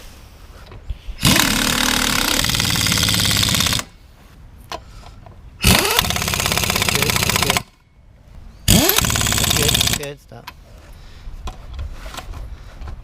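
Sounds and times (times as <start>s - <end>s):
impact wrench hammering: 5.6s - 7.7s.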